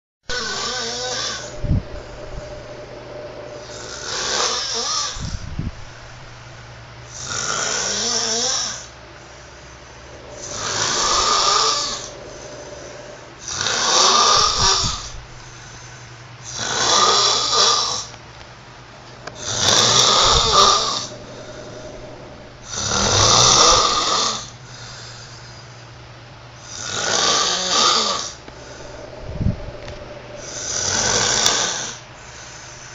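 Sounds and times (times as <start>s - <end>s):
breathy snoring: 0.3s - 5.4s, 7.1s - 15.8s, 19.0s - 25.4s, 26.6s - 32.8s
faint steady hum: 0.3s - 32.9s.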